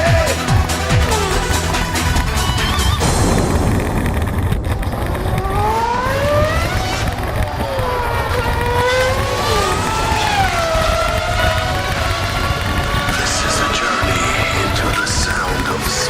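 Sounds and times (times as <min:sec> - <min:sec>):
wind noise on microphone: 0:02.1 - 0:08.6
radio-controlled car motor whining: 0:06.3 - 0:16.0.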